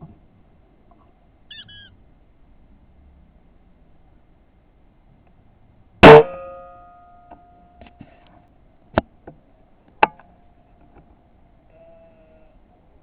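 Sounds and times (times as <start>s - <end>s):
air rifle shot with spring twang: 6.0s - 7.0s.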